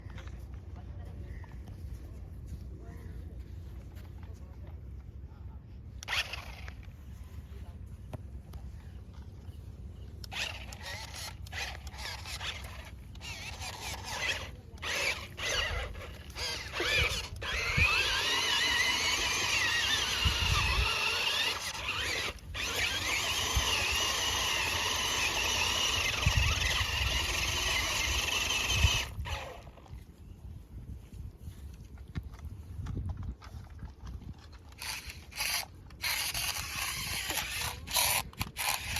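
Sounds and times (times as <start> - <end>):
rc car electric motor whining: 6.0 - 6.8, 10.2 - 29.8, 34.8 - 38.9.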